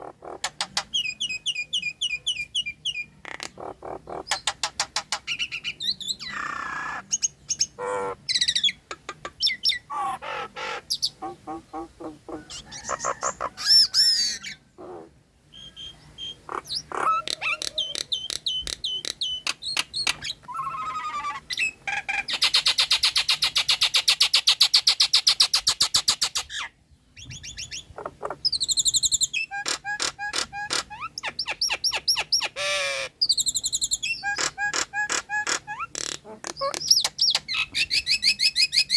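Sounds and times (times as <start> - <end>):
myna singing varied calls: 5.5 - 19.6, 20.2 - 22.3.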